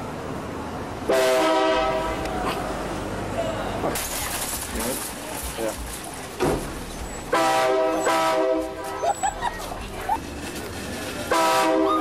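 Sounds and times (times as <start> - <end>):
multi-tone air horn blasting: 1.1 - 2.2, 7.3 - 9.0, 11.3 - 12.0.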